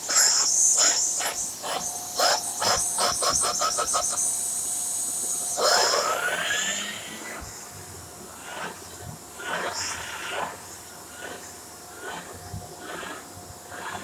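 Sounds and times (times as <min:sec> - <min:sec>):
vacuum motor whine rising: 0:00.0 - 0:09.4.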